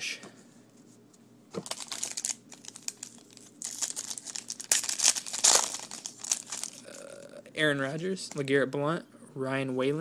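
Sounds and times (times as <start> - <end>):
wrapper tearing and crinkling: 1.6 - 7.1.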